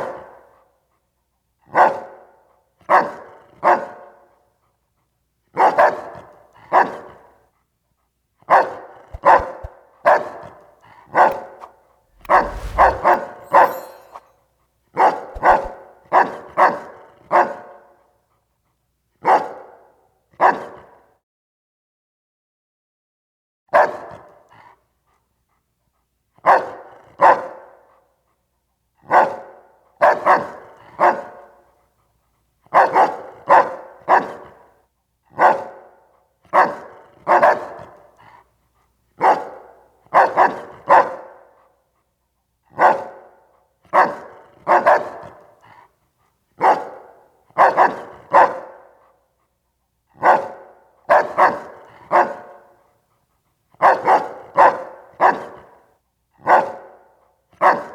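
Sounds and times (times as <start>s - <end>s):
puppy barking: 39.2s - 39.6s, 46.6s - 48.8s, 50.2s - 52.5s, 53.8s - 55.5s, 56.4s - 56.9s, 57.6s - 57.9s.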